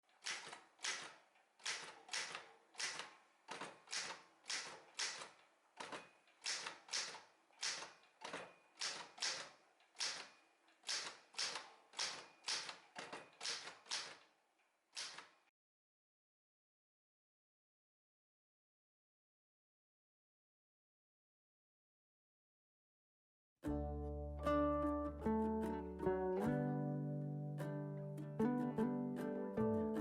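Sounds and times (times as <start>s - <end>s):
typewriter key strikes: 0.2s - 14.2s, 15.0s - 15.4s.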